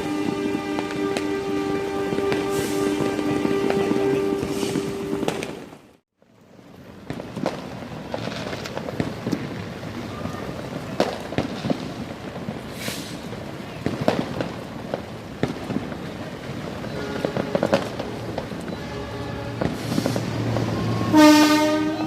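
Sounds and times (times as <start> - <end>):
fireworks cracking and banging: 0.0 - 6.0, 6.6 - 22.0
steady crackling haze: 0.0 - 22.0
brief hiss: 12.7 - 13.3, 19.7 - 20.4.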